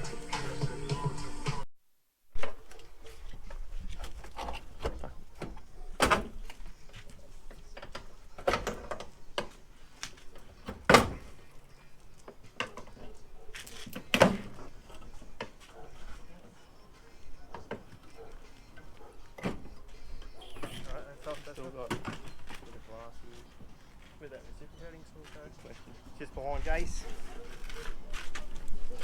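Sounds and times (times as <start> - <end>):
metal parts and tools clunking: 7.1 - 16.6, 17.5 - 22.9.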